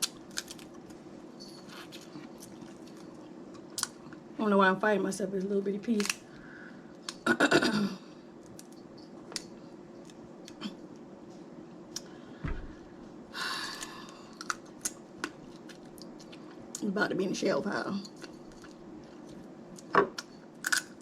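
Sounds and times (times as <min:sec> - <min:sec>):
crab shells cracking: 0:00.0 - 0:01.0, 0:02.5 - 0:04.0, 0:06.0 - 0:06.4, 0:13.7 - 0:16.4, 0:19.8 - 0:21.0.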